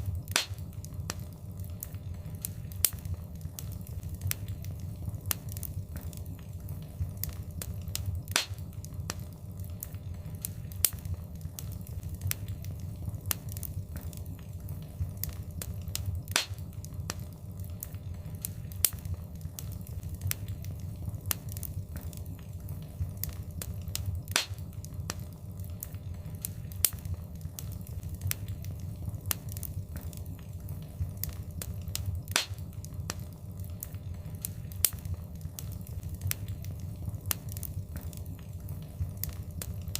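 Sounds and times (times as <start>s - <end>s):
low rumble of flames: 0.0s - 39.9s
wood fire crackling: 0.0s - 39.9s.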